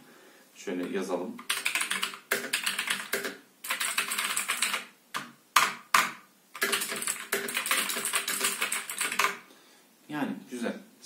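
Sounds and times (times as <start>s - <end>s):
clicky mechanical keyboard typing: 1.4s - 9.4s.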